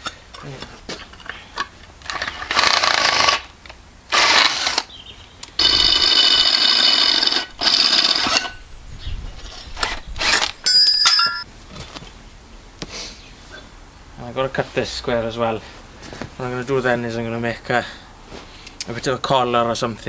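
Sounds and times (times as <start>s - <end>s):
high ringing screech: 5.6s - 8.6s.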